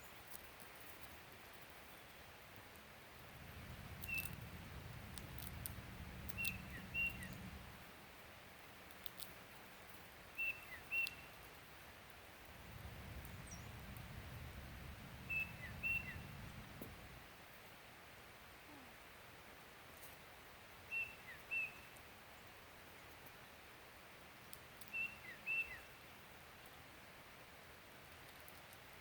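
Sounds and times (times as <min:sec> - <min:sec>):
faint low rumble: 0:03.0 - 0:09.2, 0:12.2 - 0:17.4
high bird chirps: 0:03.8 - 0:07.7, 0:10.4 - 0:11.4, 0:13.2 - 0:14.5, 0:15.1 - 0:16.6.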